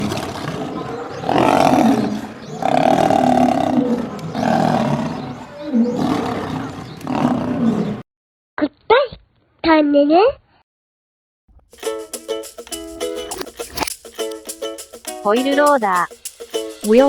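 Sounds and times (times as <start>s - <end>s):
animal roars: 0.0s - 8.0s.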